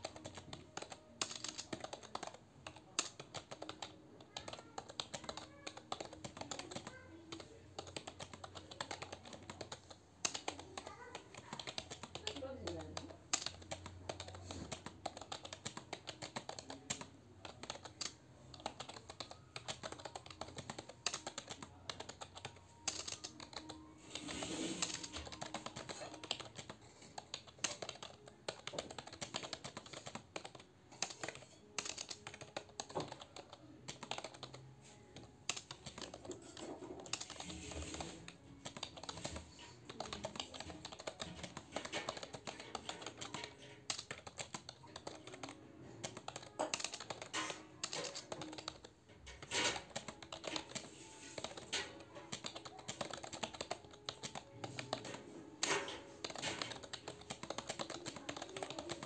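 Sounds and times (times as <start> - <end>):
keyboard typing: 0.0 - 59.0.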